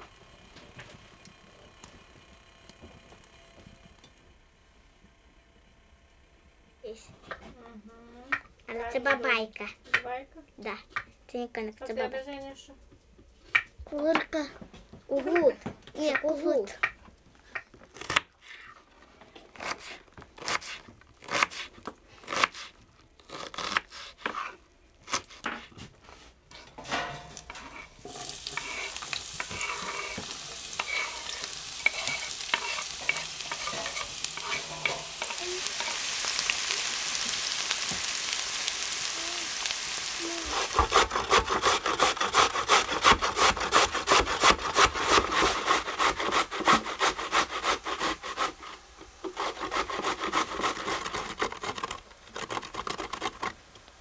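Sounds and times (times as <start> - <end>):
food sizzling in a pan: 0.0 - 4.4, 26.5 - 54.0
clicks and scrapes: 23.6 - 36.5, 40.4 - 53.9
rapid rhythmic scraping: 40.2 - 48.5.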